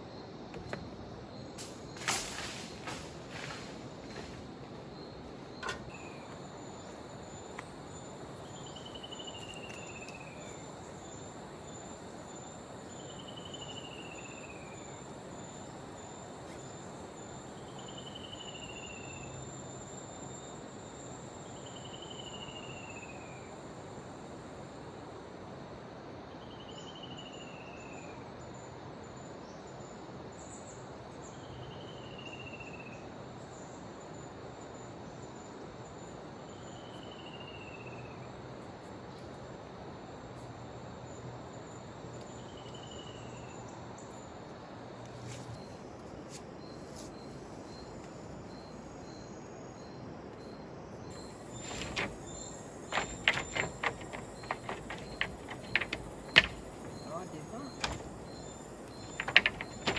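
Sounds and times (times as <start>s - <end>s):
insect buzz: 0.0s - 22.9s, 38.2s - 59.9s.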